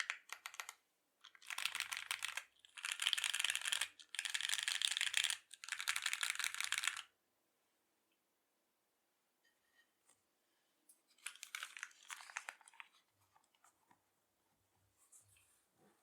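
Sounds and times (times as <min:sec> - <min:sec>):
typing on mechanical keyboard: 0:00.0 - 0:07.1, 0:11.2 - 0:12.9.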